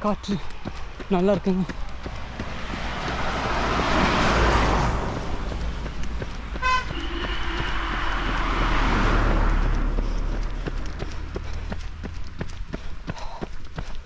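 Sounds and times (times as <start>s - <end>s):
vehicles passing close by: 0.0s - 14.0s
short horn toot: 6.6s - 8.4s.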